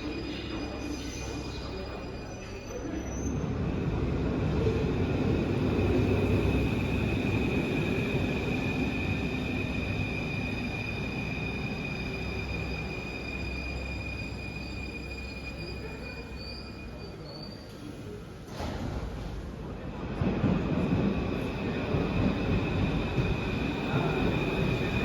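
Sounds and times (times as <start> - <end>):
train rumbling through station: 0.0 - 25.0.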